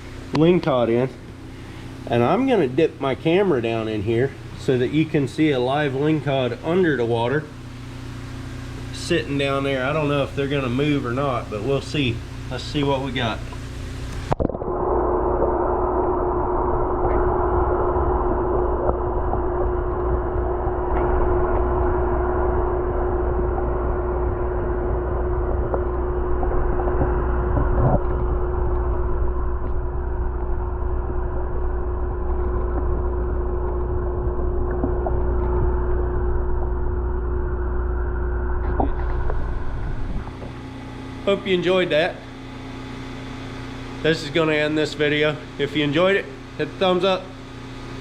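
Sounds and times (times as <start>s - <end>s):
steady mechanical hum: 0.0s - 48.0s
strong low rumble: 13.9s - 41.2s.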